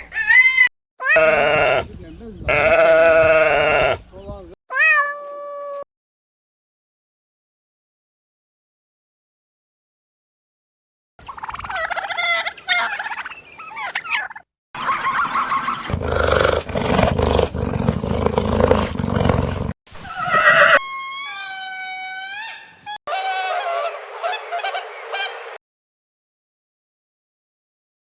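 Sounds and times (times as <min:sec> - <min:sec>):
pitched animal cries and gobbles: 0:00.0 - 0:01.8, 0:11.3 - 0:14.4
animal call dipping and rising: 0:11.2 - 0:15.9.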